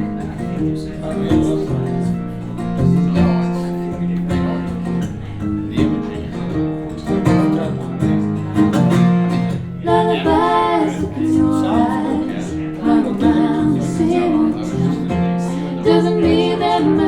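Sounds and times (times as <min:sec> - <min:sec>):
strummed acoustic guitar: 0:00.0 - 0:17.0
person singing: 0:09.8 - 0:17.0.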